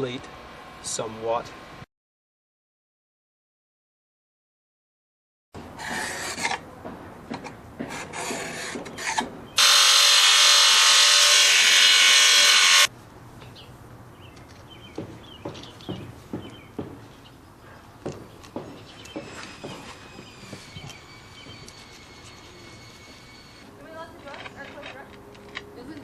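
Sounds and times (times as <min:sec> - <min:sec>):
power tool running: 0:09.0 - 0:12.9, 0:19.2 - 0:23.7.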